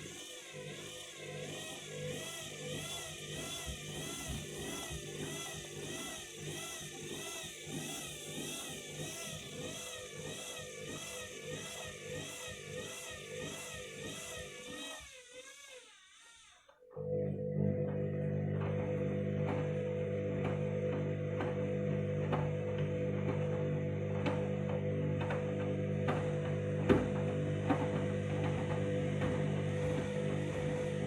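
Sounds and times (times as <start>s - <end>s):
washing machine spinning unbalanced: 17.1s - 31.0s.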